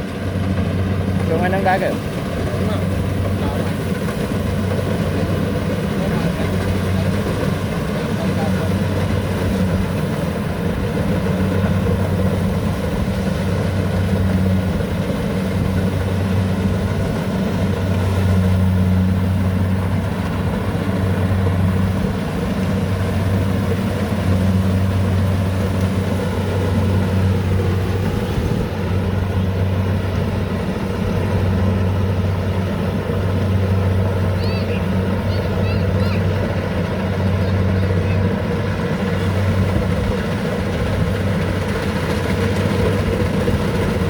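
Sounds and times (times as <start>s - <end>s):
harvester engine humming: 0.0s - 44.0s.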